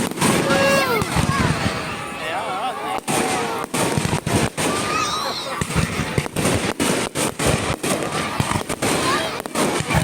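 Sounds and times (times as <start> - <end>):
firework whistles: 0.0 - 2.3
fireworks exploding: 0.0 - 10.0.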